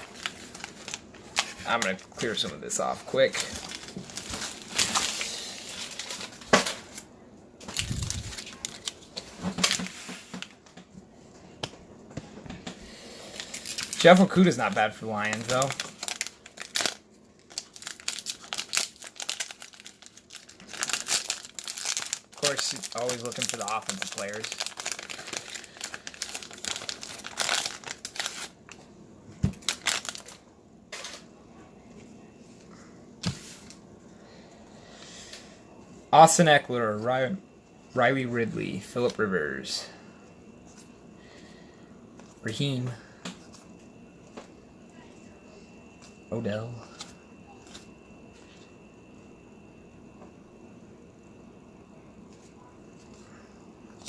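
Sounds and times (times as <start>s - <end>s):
wrappers crinkling and rustling: 0.0s - 7.0s, 7.6s - 10.6s, 13.3s - 28.8s, 29.5s - 30.4s.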